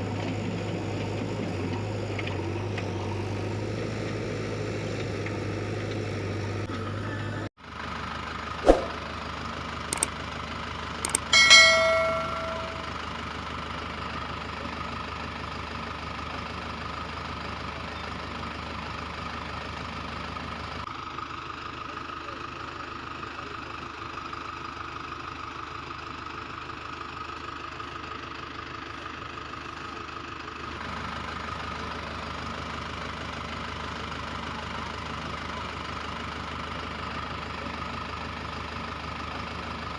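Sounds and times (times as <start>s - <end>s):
engine idling: 5.3s - 39.9s
sharp clicks: 11.1s - 11.3s
short bell-like ding: 11.1s - 13.0s.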